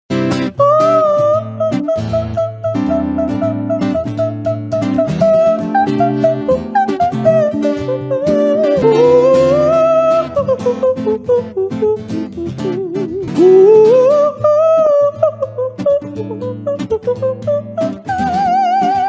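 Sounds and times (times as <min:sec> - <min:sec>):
sliding melody: 0:00.1 - 0:14.3
plucked guitar: 0:00.1 - 0:19.0.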